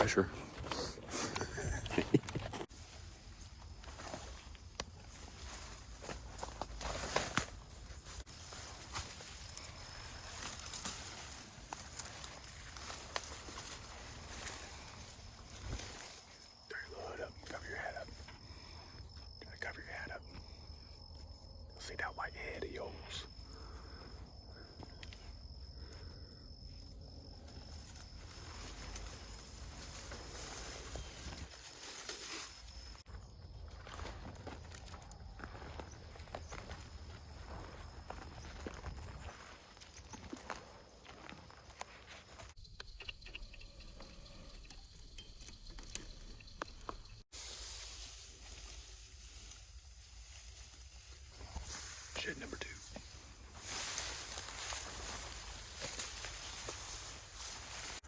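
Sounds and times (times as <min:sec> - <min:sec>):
footsteps through dry grass: 0:02.5 - 0:17.2, 0:27.1 - 0:42.6, 0:47.3 - 0:58.0
insect trilling: 0:07.4 - 0:58.0
steady hiss: 0:47.3 - 0:58.0.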